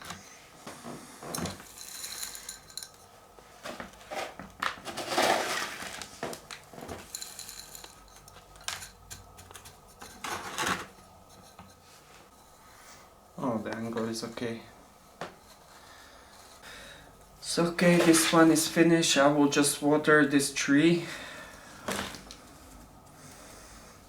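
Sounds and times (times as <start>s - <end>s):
scraping rustle: 0.7s - 9.0s, 9.6s - 12.6s, 17.5s - 18.8s
tools and pot clinking: 1.3s - 3.1s, 6.9s - 11.8s.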